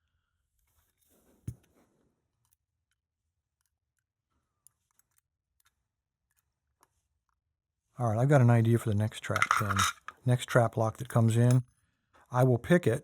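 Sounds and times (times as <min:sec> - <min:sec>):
metal lock parts clicking: 0:09.3 - 0:10.2.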